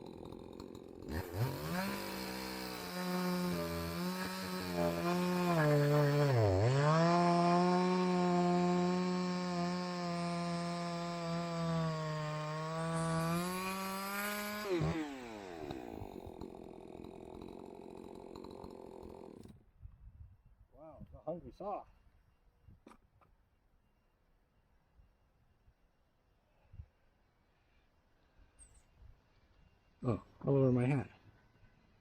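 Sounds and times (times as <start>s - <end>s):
chainsaw running at high revs: 0.0s - 19.5s.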